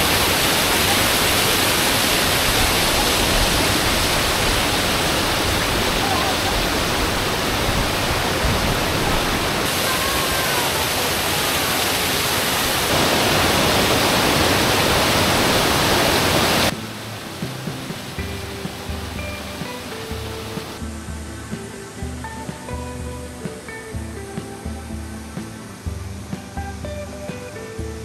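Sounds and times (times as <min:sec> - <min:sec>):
creek rushing over rocks: 0:00.0 - 0:28.0
soft music with held notes: 0:16.7 - 0:28.0.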